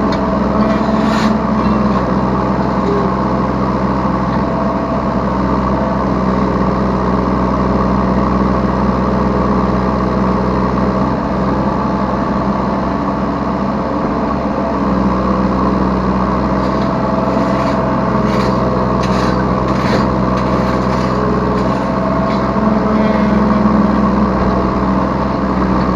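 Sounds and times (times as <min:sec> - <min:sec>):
diesel engine running under load: 0:00.0 - 0:25.9
sharp metal clanks and knocks: 0:16.6 - 0:23.8.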